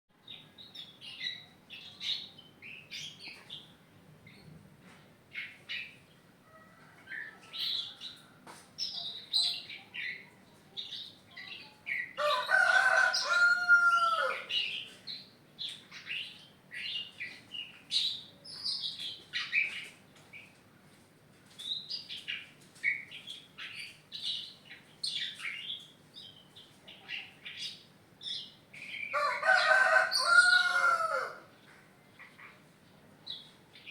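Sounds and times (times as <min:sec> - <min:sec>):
songbird chirping and twittering: 0:00.2 - 0:33.9
rooster crowing: 0:12.2 - 0:14.5, 0:29.1 - 0:31.5.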